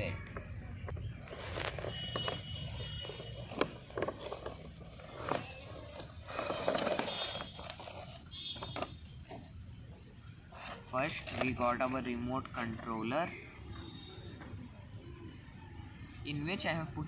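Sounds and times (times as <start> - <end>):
cardboard scraping and rustling: 0.4 - 9.5, 10.5 - 12.9.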